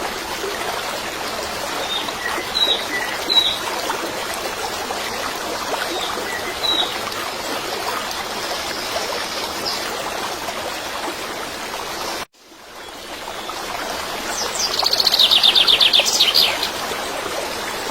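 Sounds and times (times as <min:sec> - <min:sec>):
running water stream: 0:00.0 - 0:17.9
bird chirping: 0:14.4 - 0:16.8
bird trill: 0:14.6 - 0:16.8.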